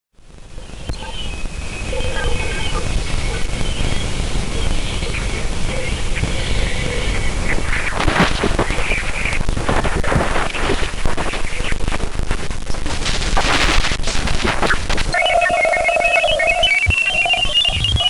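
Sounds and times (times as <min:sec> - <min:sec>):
crackling static hiss with pops: 0:00.1 - 0:18.0
rising chirps: 0:15.1 - 0:18.0.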